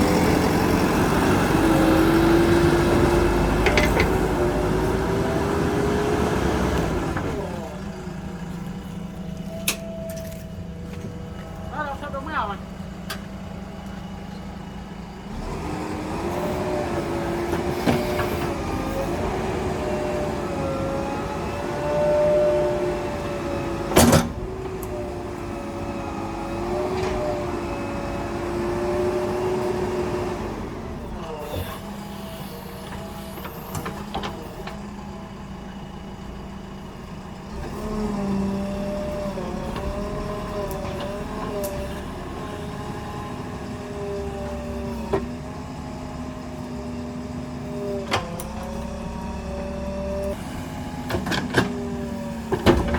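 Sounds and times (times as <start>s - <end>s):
backhoe diesel engine revving: 0.0s - 52.9s.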